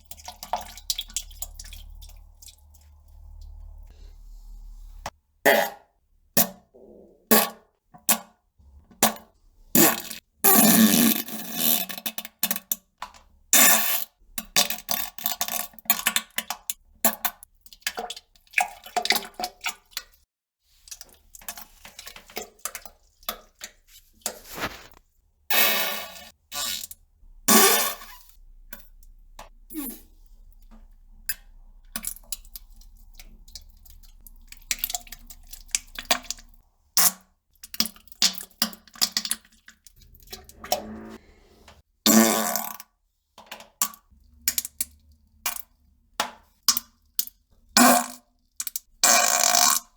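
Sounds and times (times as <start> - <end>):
farts and poop sounds: 5.5 - 5.9, 42.1 - 42.8.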